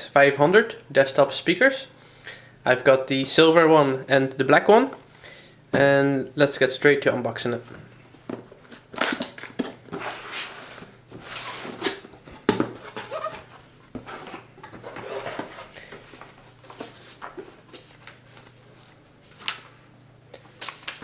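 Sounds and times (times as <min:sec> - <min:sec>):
cardboard rustling and scraping: 0:08.1 - 0:19.8.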